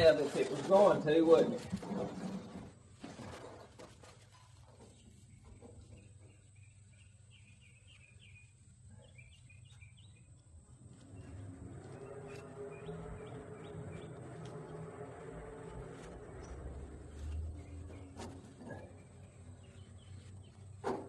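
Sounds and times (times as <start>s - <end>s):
low mechanical hum: 1.8s - 21.0s
small bird chirping: 4.8s - 14.4s, 16.4s - 20.8s.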